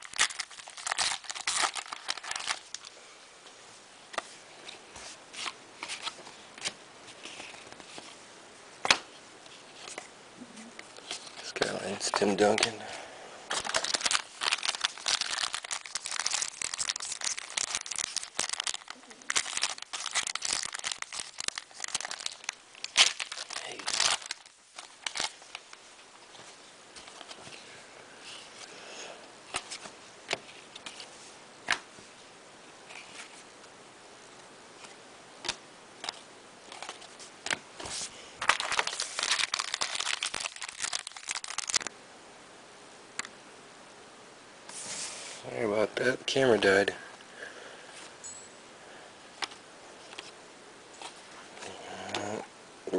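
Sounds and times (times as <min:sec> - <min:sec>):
foil wrapper crinkling and tearing: 0:00.0 - 0:02.9, 0:11.0 - 0:12.7, 0:13.5 - 0:25.8, 0:38.4 - 0:41.9.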